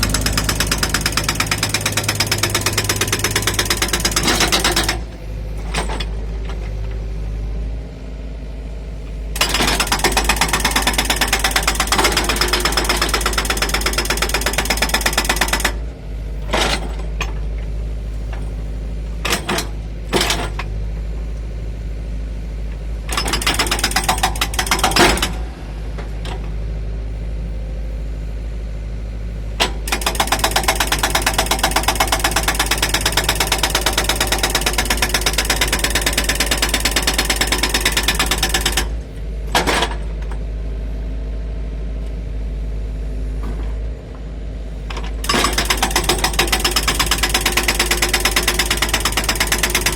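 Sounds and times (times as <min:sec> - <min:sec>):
hydraulic breaker hammer pounding: 0:00.0 - 0:06.4, 0:09.4 - 0:17.4, 0:19.2 - 0:20.7, 0:23.1 - 0:25.5, 0:29.6 - 0:40.4, 0:44.9 - 0:49.9
diesel engine running: 0:00.0 - 0:49.9.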